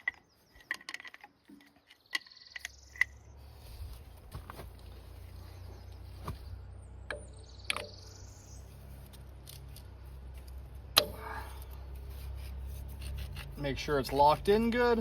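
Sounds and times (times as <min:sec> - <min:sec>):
metal couplers clicking and knocking: 0:00.0 - 0:03.2
bird chirping: 0:00.0 - 0:03.8, 0:05.2 - 0:09.0.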